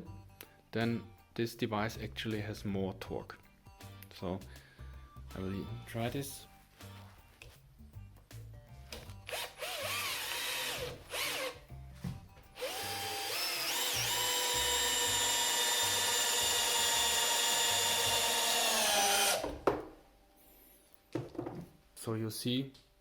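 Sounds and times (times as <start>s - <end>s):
cordless drill driving screw into wood: 9.3s - 11.6s, 12.6s - 19.6s
knock: 19.5s - 19.9s, 21.2s - 21.7s.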